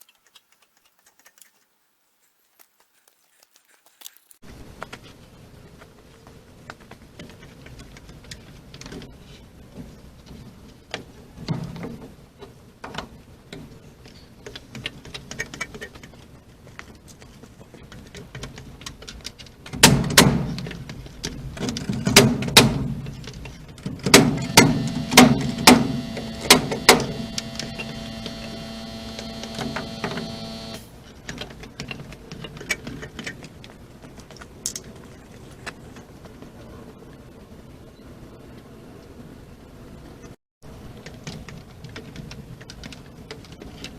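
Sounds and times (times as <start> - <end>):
small power tool motor: 24.4 - 30.9.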